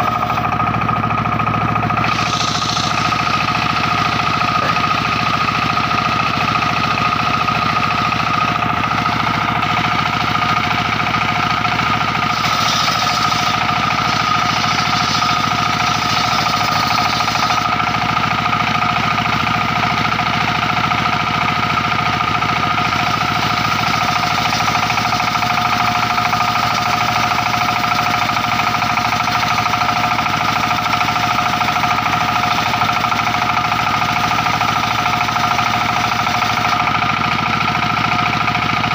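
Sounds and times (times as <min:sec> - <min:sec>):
circular saw whine: 0:00.0 - 0:20.6, 0:22.5 - 0:37.0
sawmill engine beat: 0:00.0 - 0:38.9
hiss: 0:02.0 - 0:03.0, 0:12.3 - 0:17.6.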